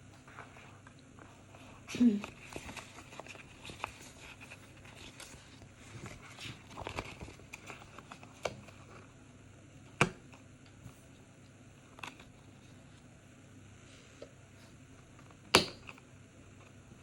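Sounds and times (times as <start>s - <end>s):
paper rustling: 2.0s - 9.0s.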